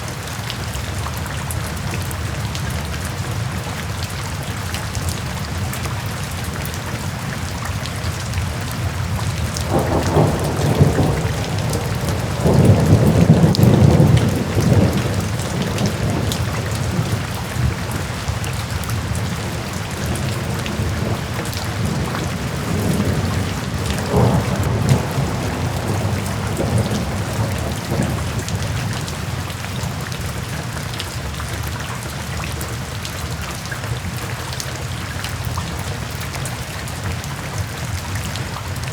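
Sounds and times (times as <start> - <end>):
steady rain falling: 0.0 - 38.9
thunder rumbling: 9.4 - 29.4.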